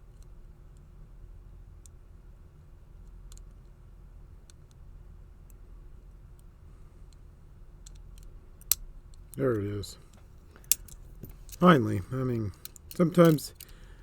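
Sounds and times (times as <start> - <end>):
low steady hum: 0.0 - 14.0
metallic clicks of lock picking: 7.8 - 13.9.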